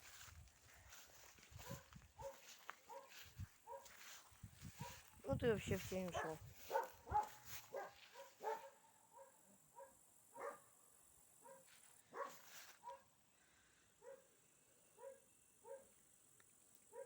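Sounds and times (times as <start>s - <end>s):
dog barking faintly: 1.5s - 5.1s, 6.1s - 10.7s, 11.4s - 13.1s.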